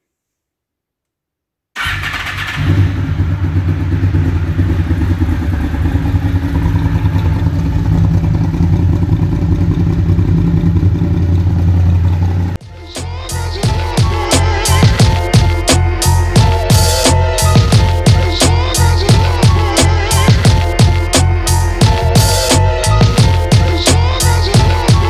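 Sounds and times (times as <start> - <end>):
motorcycle engine running steadily: 2.5 - 25.0.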